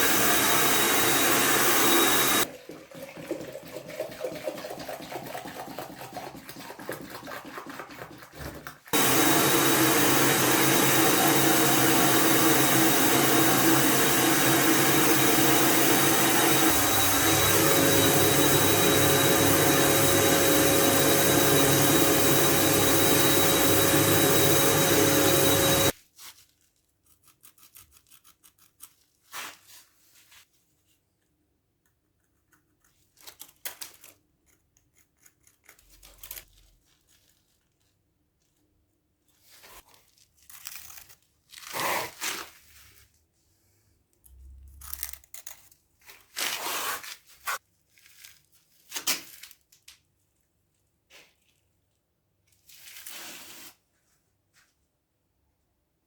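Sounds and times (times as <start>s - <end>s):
electric tool motor whining: 0.0s - 2.5s, 9.0s - 25.9s
faint clicks and rustles of handling: 35.6s - 41.0s.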